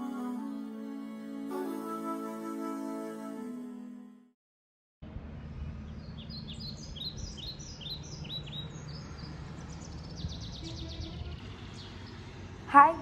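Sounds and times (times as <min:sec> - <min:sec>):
bird singing high notes: 0:10.3 - 0:12.0.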